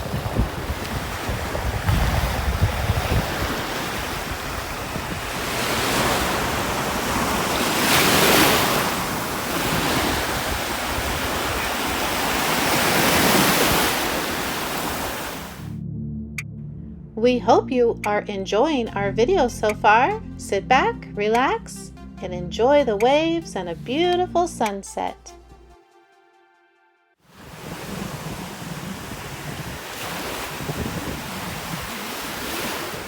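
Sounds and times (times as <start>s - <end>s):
waves breaking on beach: 0.0s - 15.6s, 27.3s - 33.0s
wind buffeting microphone: 0.0s - 15.6s, 27.4s - 33.0s.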